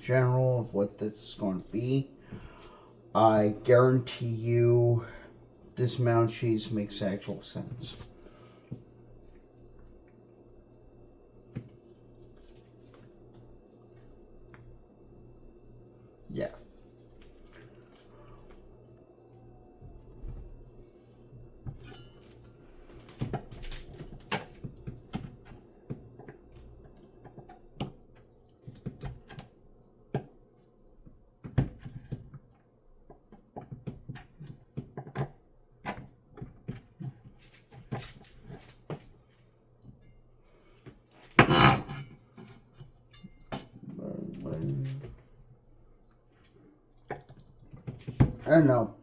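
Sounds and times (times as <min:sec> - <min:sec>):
knife clattering: 0:21.8 - 0:22.5, 0:43.1 - 0:43.7.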